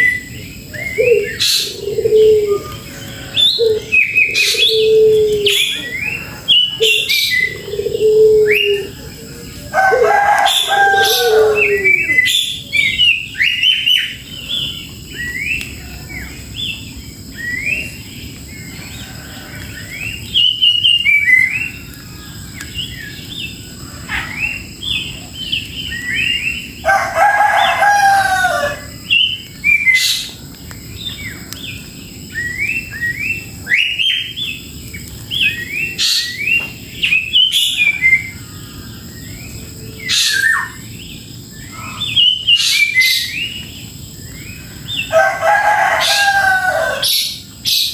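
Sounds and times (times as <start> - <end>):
birds chirping: 0.0 - 47.9
rooster crowing: 0.9 - 12.8, 17.8 - 20.5, 26.1 - 29.2, 44.4 - 47.9.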